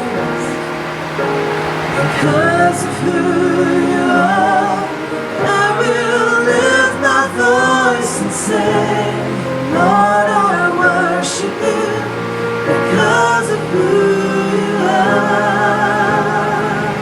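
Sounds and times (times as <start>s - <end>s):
keyboard accompaniment: 0.0s - 17.0s
voices singing with vibrato: 0.0s - 17.0s.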